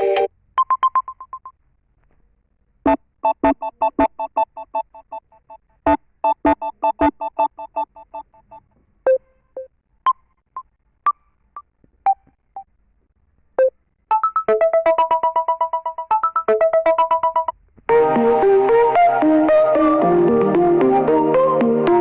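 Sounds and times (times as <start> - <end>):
phone ringtones: 3.2 - 9.2, 13.6 - 17.5.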